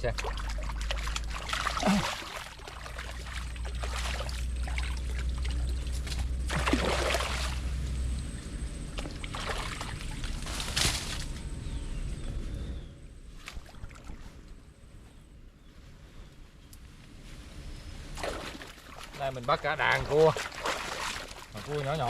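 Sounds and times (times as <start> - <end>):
water sloshing and splashing: 0.0 - 11.4, 13.4 - 14.6, 18.2 - 22.0
low steady rumble: 0.0 - 22.0.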